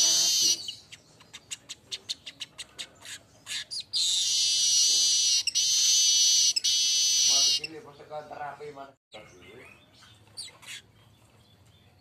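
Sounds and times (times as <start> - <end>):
bird high sizzling buzz: 4.0 - 7.6
bird wheezy buzz: 4.0 - 7.6.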